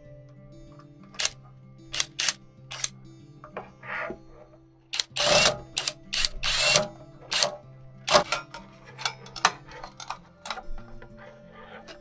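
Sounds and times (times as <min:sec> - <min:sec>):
background music: 0:00.0 - 0:12.0
loud rasping noises: 0:01.2 - 0:02.9, 0:03.6 - 0:10.0
sharp clicks and knocks: 0:05.0 - 0:11.2.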